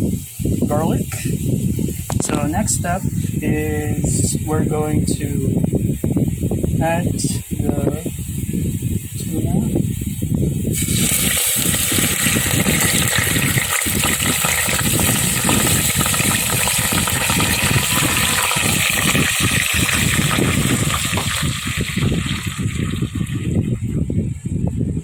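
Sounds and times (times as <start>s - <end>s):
fish frying in hot oil: 10.7s - 23.8s.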